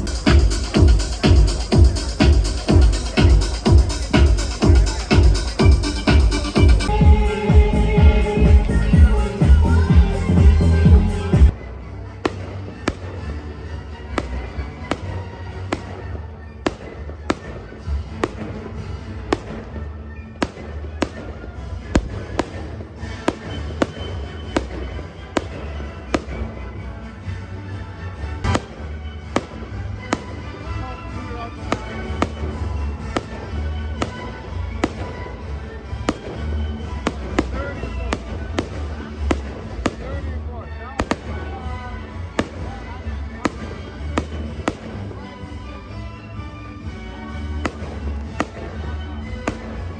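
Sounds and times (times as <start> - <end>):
music playing: 0.0 - 49.9
fireworks bangs: 12.2 - 13.4, 14.1 - 26.7, 28.4 - 40.4, 41.0 - 45.5, 47.4 - 49.9.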